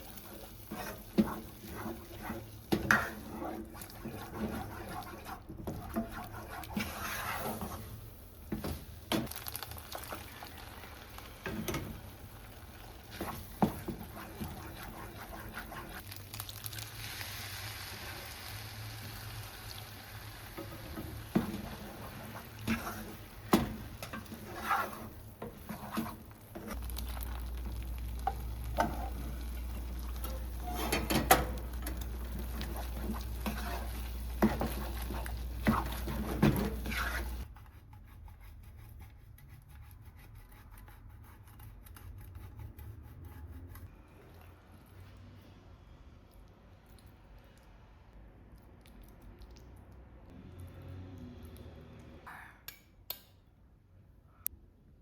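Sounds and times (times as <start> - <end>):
food sizzling in a pan: 16.0 - 23.4.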